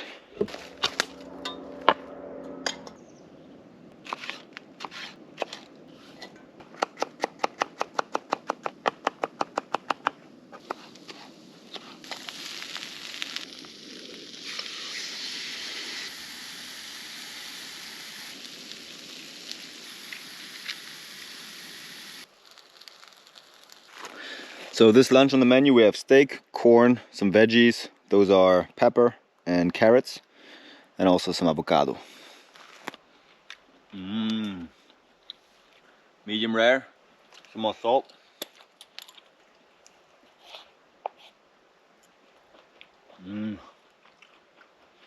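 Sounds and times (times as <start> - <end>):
cooking fire crackling: 0.0 - 1.8, 3.8 - 26.6, 37.0 - 45.0
food sizzling: 10.7 - 24.4.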